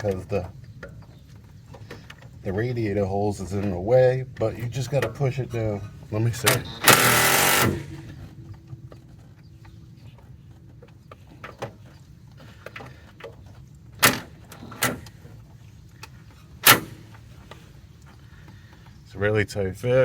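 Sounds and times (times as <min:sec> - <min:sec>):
sharp metal knocks: 0:06.4 - 0:08.3, 0:16.6 - 0:17.1.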